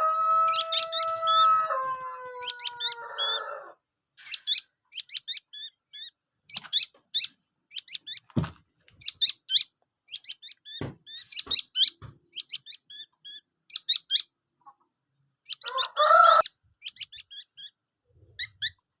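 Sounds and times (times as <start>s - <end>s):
harsh rasping bird call: 0.0s - 5.7s, 15.5s - 17.7s
fledgling songbird chirping: 0.0s - 19.0s.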